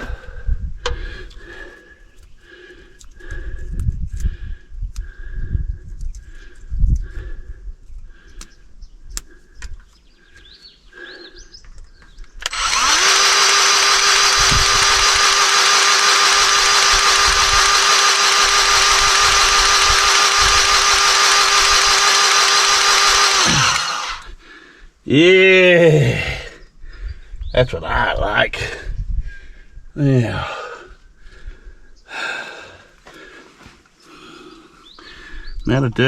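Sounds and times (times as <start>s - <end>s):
grease gun motor running: 12.4s - 24.3s.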